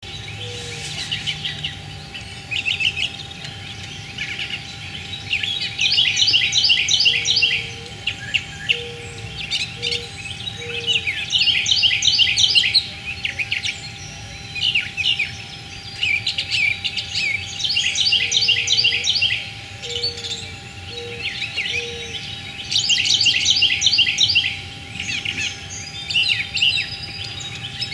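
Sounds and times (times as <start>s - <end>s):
songbirds singing: 0.0s - 27.9s.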